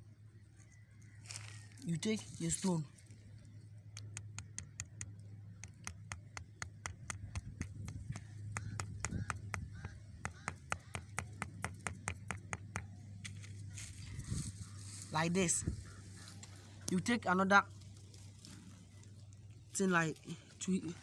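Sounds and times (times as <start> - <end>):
stone tapping a nail: 4.0 - 12.9.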